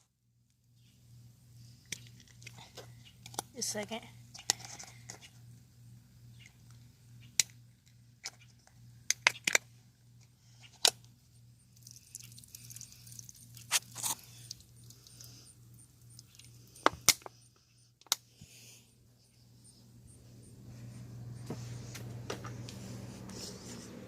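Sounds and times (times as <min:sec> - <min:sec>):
sharp clicks and knocks of objects: 0:06.4 - 0:11.1, 0:16.2 - 0:17.4.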